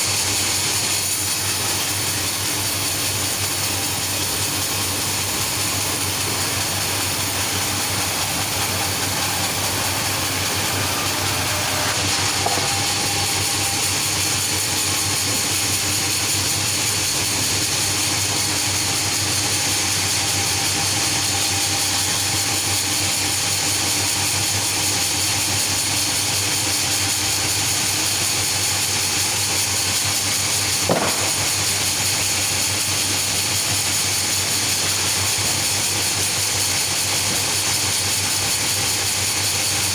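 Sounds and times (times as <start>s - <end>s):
sawmill machinery hissing: 0.0s - 39.9s
knock: 12.4s - 13.0s.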